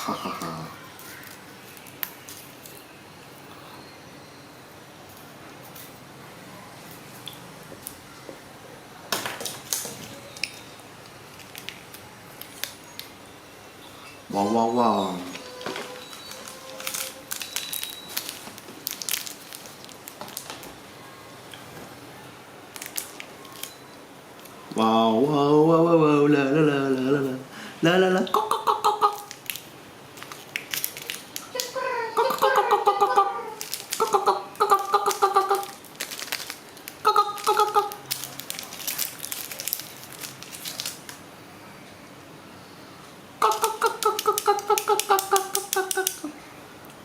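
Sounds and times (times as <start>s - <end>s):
plastic packaging crinkling: 11.3s - 13.1s, 15.3s - 20.7s, 22.7s - 23.8s, 29.1s - 32.6s, 33.4s - 41.2s
short high-pitched vocal notes: 37.0s - 38.0s.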